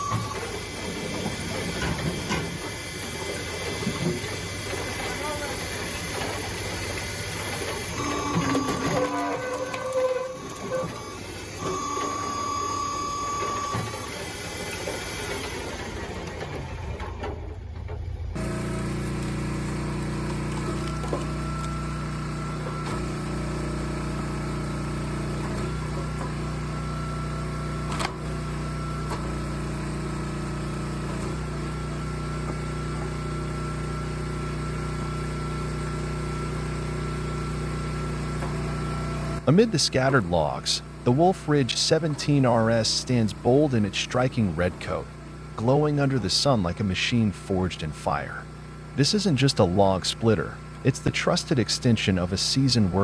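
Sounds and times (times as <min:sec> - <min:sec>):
mechanical clatter and tones: 0:00.0 - 0:18.4
log splitter engine hum: 0:00.0 - 0:53.0.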